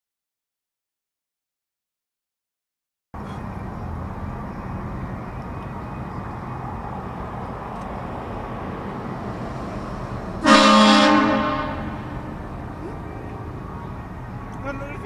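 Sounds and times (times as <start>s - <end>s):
car running noise: 3.2s - 15.0s
train horn blast: 10.4s - 12.6s.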